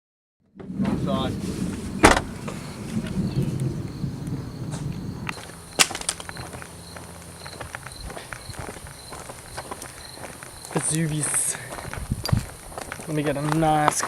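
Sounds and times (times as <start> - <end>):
low rumble: 0.5 - 9.6
insects chirping: 1.1 - 14.0
sharp knock: 2.0 - 2.3
steady high buzz: 2.0 - 13.4
footstep-like clicks: 5.3 - 14.0.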